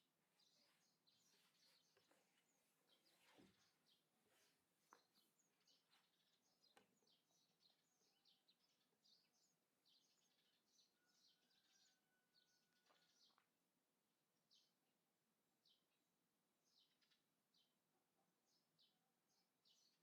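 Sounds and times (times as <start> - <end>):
birds chirping: 0.0 - 13.4.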